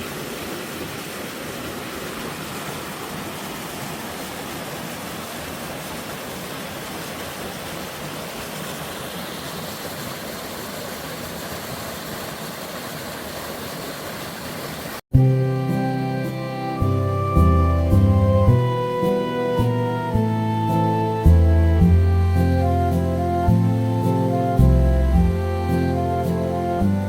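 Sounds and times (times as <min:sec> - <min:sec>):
stream water rushing: 0:00.0 - 0:27.0
music: 0:15.1 - 0:27.0.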